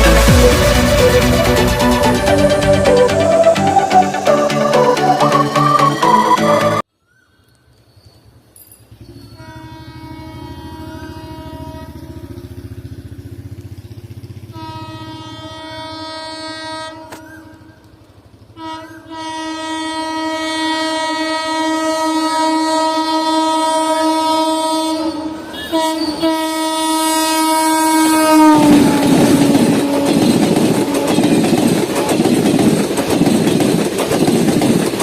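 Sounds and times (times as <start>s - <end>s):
locomotive horn blasts: 0.0s - 6.8s, 9.3s - 12.6s, 14.4s - 17.6s, 18.6s - 32.2s
train wheels on rails: 0.0s - 6.8s, 25.3s - 35.0s.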